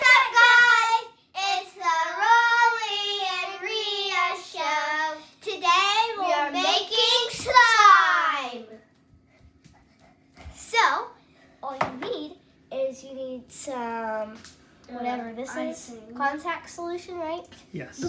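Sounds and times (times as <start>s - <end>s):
child singing: 0.0s - 8.7s.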